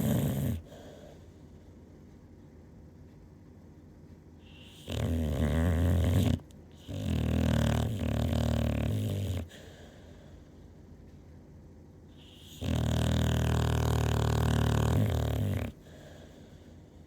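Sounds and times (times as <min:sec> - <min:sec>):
loud snoring: 0:00.0 - 0:00.7, 0:04.6 - 0:09.6, 0:12.3 - 0:15.8.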